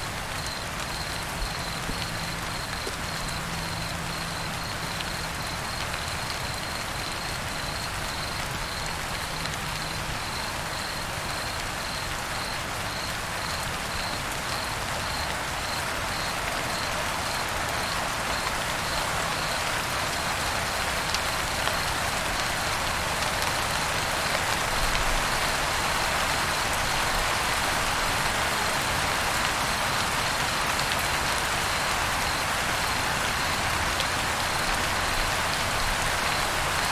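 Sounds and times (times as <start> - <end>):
crickets chirping: 0.0 - 36.9
light rain falling: 0.0 - 36.9.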